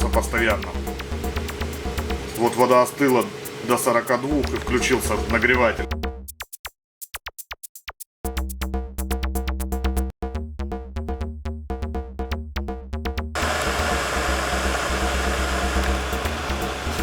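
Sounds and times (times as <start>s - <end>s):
electric kettle heating water: 0.0s - 5.8s, 13.4s - 17.0s
electronic music with drum beat: 0.0s - 17.0s.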